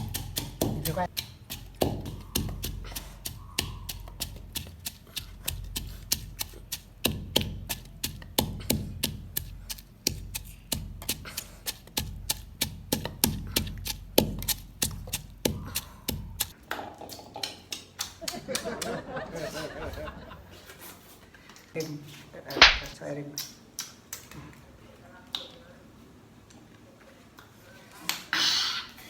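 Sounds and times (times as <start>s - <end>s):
rapid chopping knocks: 0.0s - 3.0s.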